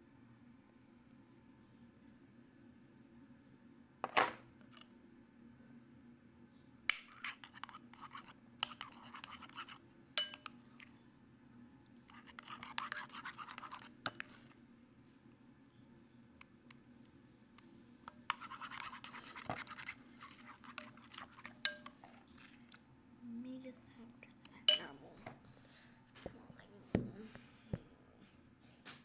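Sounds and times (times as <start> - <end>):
utensil scraping container: 7.1 - 9.8, 12.1 - 14.5, 18.3 - 22.8.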